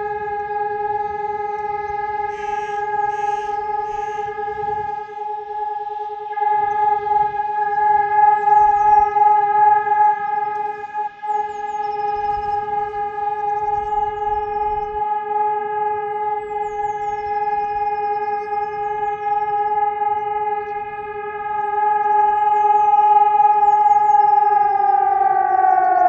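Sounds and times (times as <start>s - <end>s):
steady siren tone: 0.0s - 26.0s
faint bird chirps: 2.2s - 5.2s, 10.6s - 15.0s.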